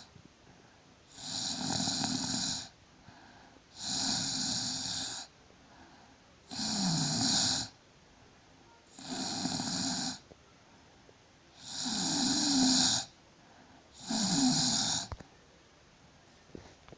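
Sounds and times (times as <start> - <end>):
quiet breaths: 0.0 - 16.9
woman snoring: 1.1 - 2.8, 3.7 - 5.3, 6.5 - 7.8, 8.9 - 10.2, 11.6 - 13.2, 13.9 - 15.2.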